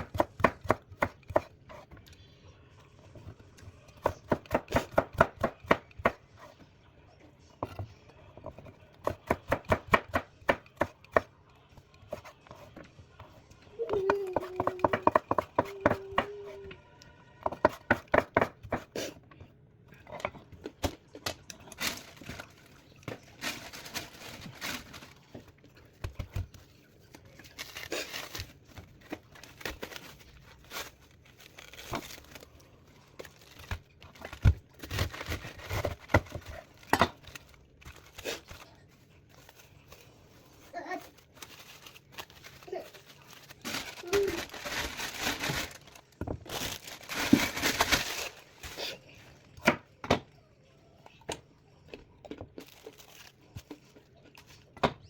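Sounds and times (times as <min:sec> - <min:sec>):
packaging crinkling and rustling: 0:21.1 - 0:48.8, 0:52.4 - 0:54.0.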